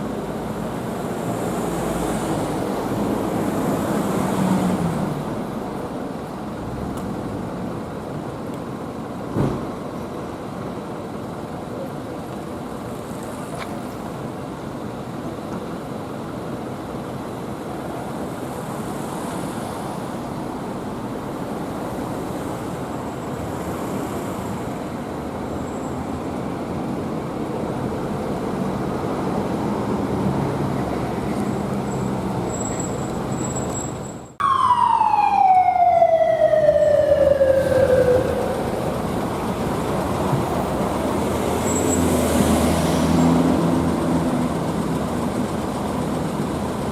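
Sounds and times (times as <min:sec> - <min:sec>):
road traffic noise: 0:00.0 - 0:46.9
police motorcycle siren: 0:34.4 - 0:39.2.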